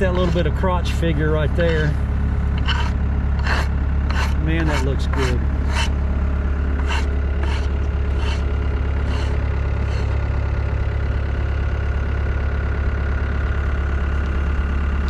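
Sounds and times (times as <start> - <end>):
short engine strokes: 0.0 - 10.9
engine idling: 0.0 - 15.0.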